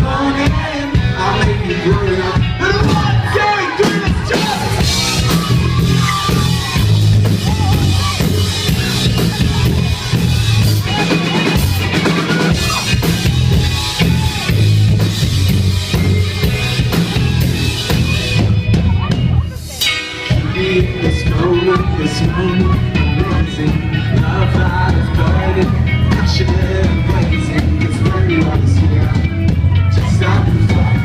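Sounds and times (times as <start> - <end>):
person singing: 0.0 - 6.8, 19.6 - 31.0
rock band playing: 0.0 - 31.0.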